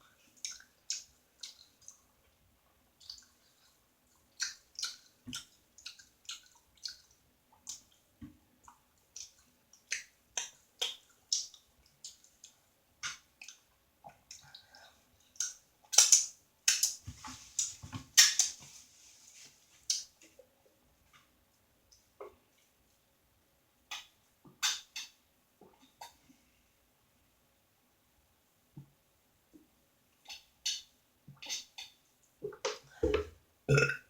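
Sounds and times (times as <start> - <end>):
person chewing with wet mouth noises: 0.3 - 2.1, 3.0 - 8.0, 8.6 - 17.0.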